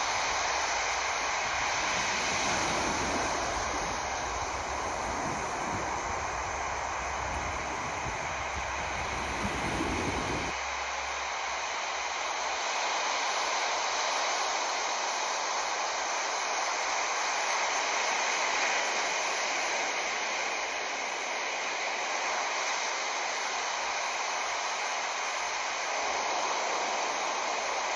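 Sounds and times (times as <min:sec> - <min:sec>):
rushing water: 0:00.0 - 0:16.4.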